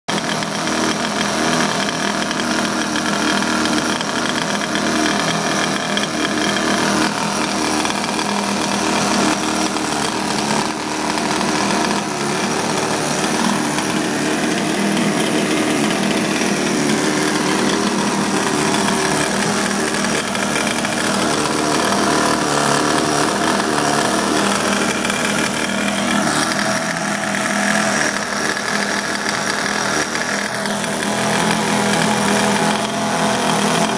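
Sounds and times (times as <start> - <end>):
small two-stroke boat engine: 0.1 - 33.9.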